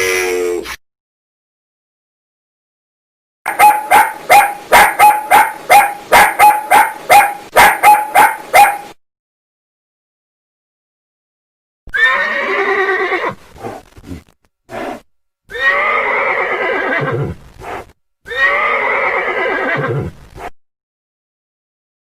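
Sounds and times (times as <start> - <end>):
horse whinnying: 11.9 - 13.4, 14.8 - 17.4, 18.3 - 20.2.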